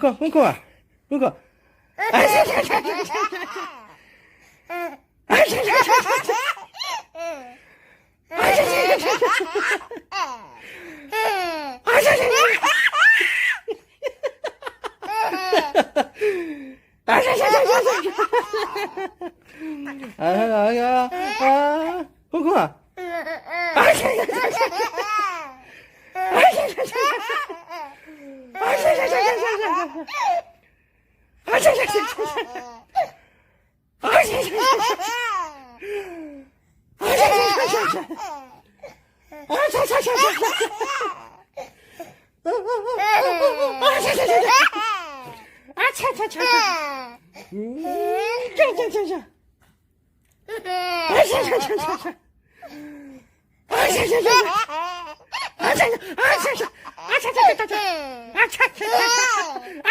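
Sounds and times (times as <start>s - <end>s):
baby laughing: 2.0s - 4.0s, 4.7s - 7.5s, 8.3s - 16.1s, 17.1s - 20.2s, 21.1s - 22.0s, 23.0s - 30.5s, 31.5s - 33.1s, 34.0s - 35.8s, 37.0s - 38.7s, 39.4s - 41.7s, 42.5s - 49.1s, 50.5s - 52.2s, 53.7s - 59.9s.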